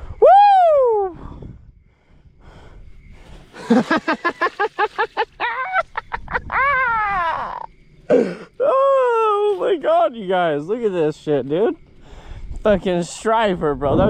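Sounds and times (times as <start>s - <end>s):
man laughing: 3.6s - 7.7s.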